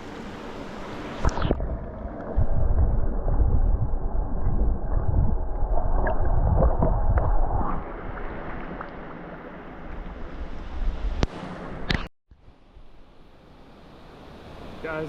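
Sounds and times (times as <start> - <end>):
wind buffeting microphone: 1.6 - 8.3.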